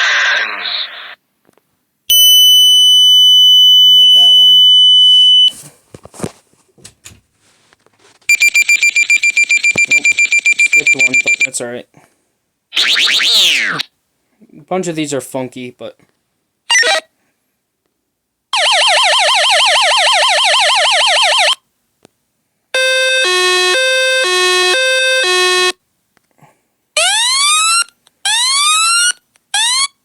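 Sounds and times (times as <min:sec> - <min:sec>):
electronic siren alert tones: 0:12.8 - 0:13.8, 0:22.8 - 0:25.8.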